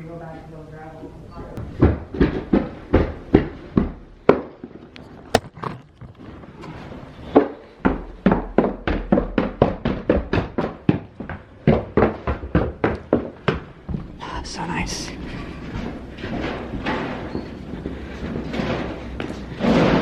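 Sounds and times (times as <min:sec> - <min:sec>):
heavy oven knocking and thumping: 0:15.6 - 0:20.0.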